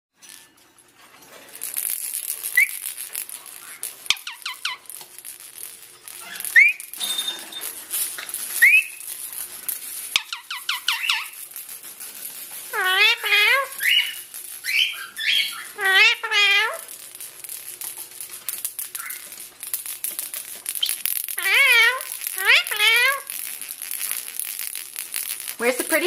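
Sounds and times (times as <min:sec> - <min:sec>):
parrot chirping and whistling: 0:02.4 - 0:03.0, 0:03.6 - 0:04.9, 0:06.1 - 0:07.8, 0:08.4 - 0:09.2, 0:10.1 - 0:11.5, 0:12.7 - 0:16.9, 0:18.8 - 0:19.4, 0:20.7 - 0:23.3.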